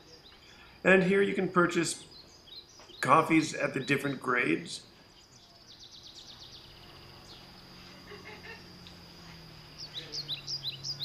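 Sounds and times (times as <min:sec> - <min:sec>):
birds chirping: 0:00.0 - 0:11.0
faint steady high tone: 0:03.1 - 0:11.0
downward-sweeping bird whistles: 0:09.8 - 0:11.0.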